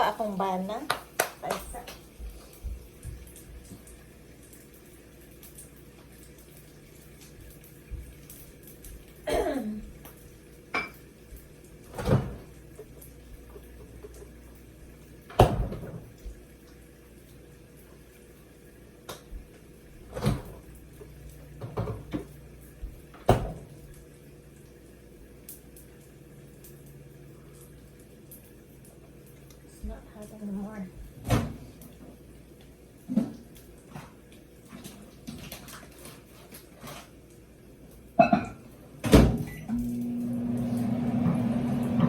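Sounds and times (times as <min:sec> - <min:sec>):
faint steady hum: 0:37.3 - 0:42.0
dishes and utensils clattering: 0:38.2 - 0:38.6.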